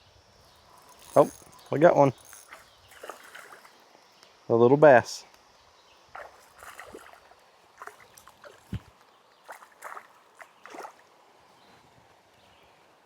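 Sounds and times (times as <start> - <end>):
small water splashes: 0.8 - 4.0, 6.1 - 11.2.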